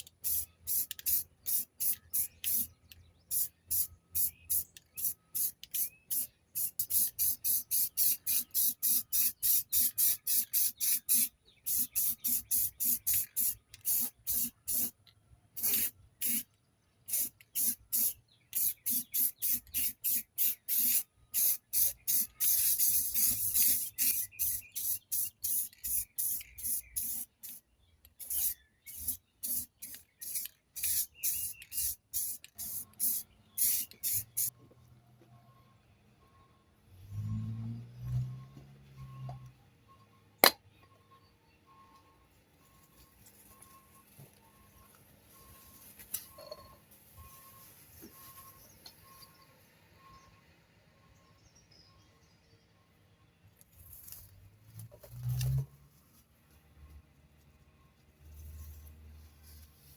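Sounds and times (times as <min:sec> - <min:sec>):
spray paint can hissing: 0:00.0 - 0:02.7, 0:03.3 - 0:15.0, 0:15.6 - 0:16.5, 0:17.1 - 0:27.6, 0:28.2 - 0:34.5.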